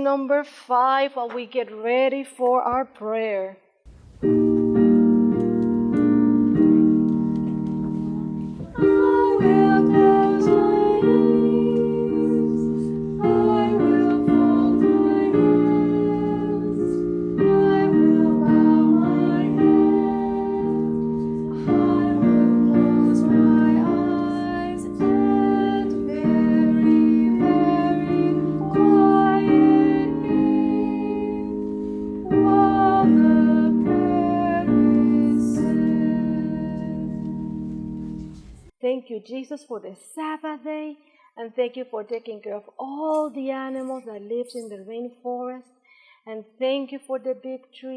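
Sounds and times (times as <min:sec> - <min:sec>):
gentle piano melody: 0:04.2 - 0:38.7.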